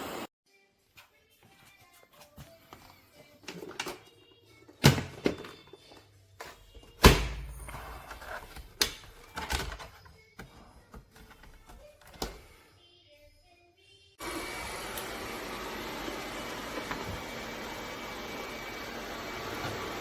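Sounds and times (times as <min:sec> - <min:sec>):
faint background music: 0:00.5 - 0:14.2.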